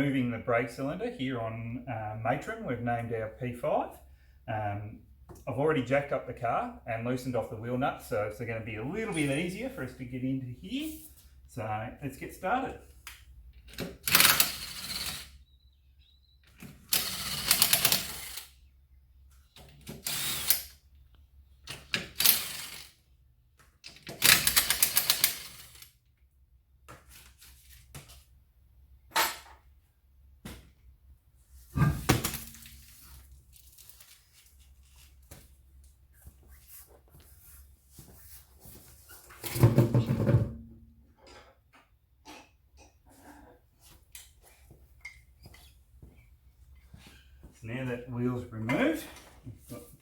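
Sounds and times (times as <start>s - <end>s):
power tool spinning off nuts: 16.8s - 18.5s, 19.9s - 20.8s, 21.8s - 23.0s, 24.1s - 25.8s
wheel thud: 31.7s - 32.8s.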